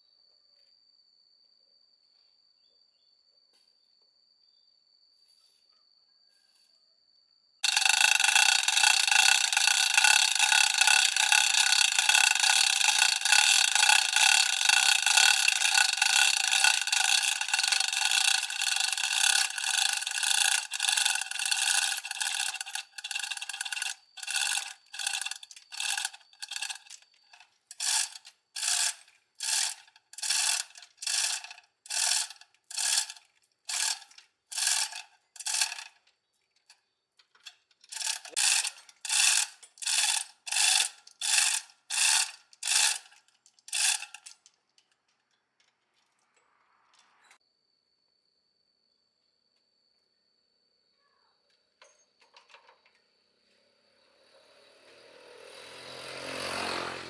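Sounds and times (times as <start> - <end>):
metal ratchet clicking: 7.6 - 45.1.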